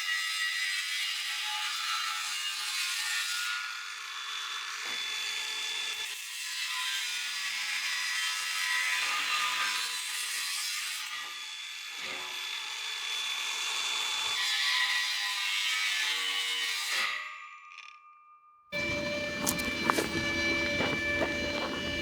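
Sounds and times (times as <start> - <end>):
power tool grinding: 18.8 - 22.0.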